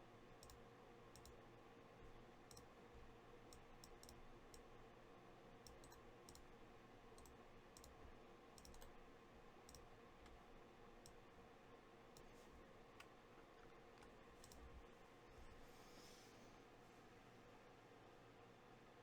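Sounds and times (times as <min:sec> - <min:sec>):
light clicks: 0:14.0 - 0:14.7.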